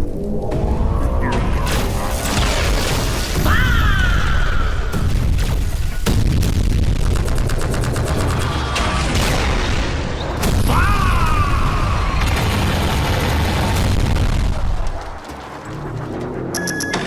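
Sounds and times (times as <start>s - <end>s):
heavy booms and rumbling: 0.4s - 15.3s
rapid sharp clicks or shots: 5.3s - 9.6s.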